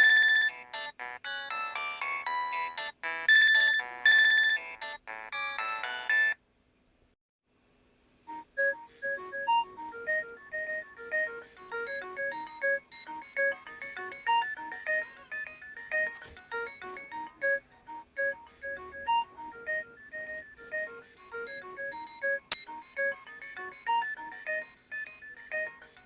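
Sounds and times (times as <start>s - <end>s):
electronic ringtone melody: 8.6s - 17.3s, 18.3s - 26.0s.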